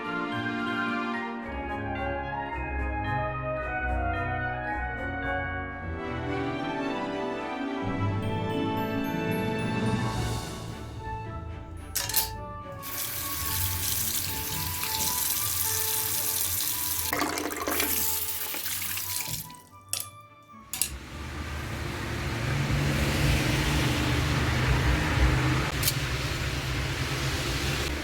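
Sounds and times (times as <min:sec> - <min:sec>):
soft background music: 0:00.0 - 0:21.8
running water: 0:12.8 - 0:19.7.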